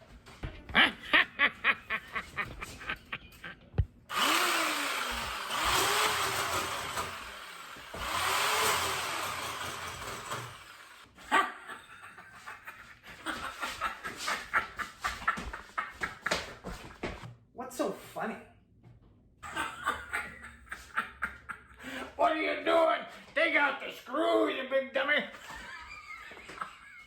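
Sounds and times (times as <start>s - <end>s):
power tool running: 4.1s - 11.2s.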